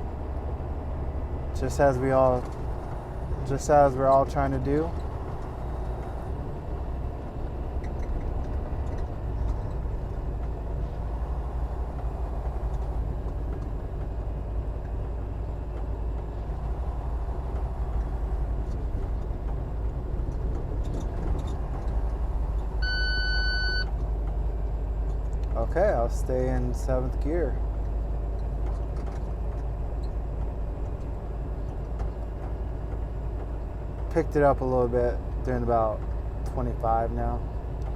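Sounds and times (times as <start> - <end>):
road noise inside cab: 0.0 - 37.9
truck diesel engine drone: 0.0 - 37.9
electronic beep: 22.8 - 23.9.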